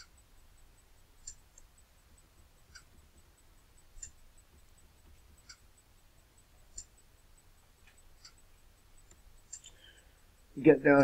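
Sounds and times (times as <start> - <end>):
faint low hum: 0.0 - 11.0.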